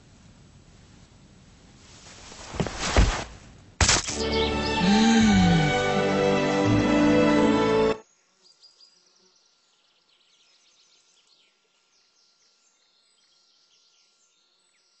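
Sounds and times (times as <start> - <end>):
faint steady hiss: 0.0 - 4.2.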